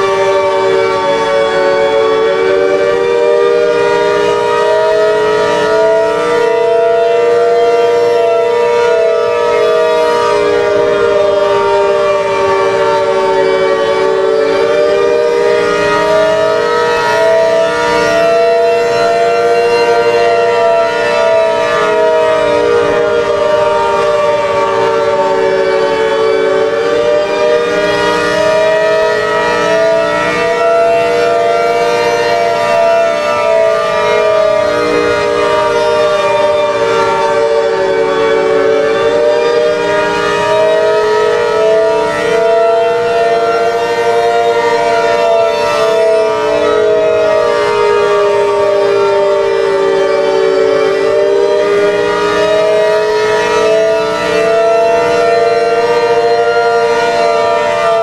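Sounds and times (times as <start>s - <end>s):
civil defense siren wailing: 0.0s - 58.0s.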